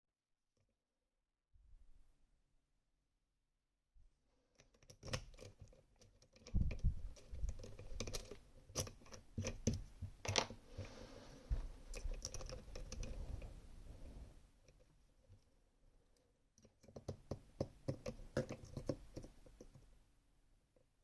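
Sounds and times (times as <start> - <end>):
lock picking clicks and scratches: 4.5 - 10.6, 11.9 - 13.2, 16.6 - 19.8.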